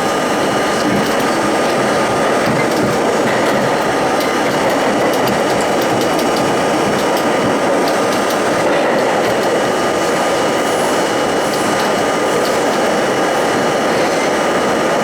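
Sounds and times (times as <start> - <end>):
subway wheels roaring on rail: 0.0 - 15.0
rapid clicks: 0.7 - 10.4, 11.4 - 13.1.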